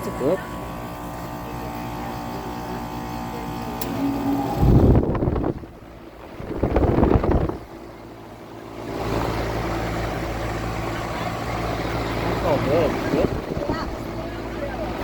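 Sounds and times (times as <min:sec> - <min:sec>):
air conditioner unit humming: 0:00.0 - 0:15.0
wind gusts on microphone: 0:04.6 - 0:07.8.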